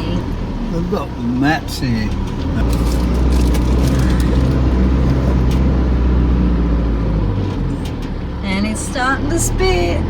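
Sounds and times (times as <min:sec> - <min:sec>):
vehicle engine and tyres rumbling: 0:00.0 - 0:10.0.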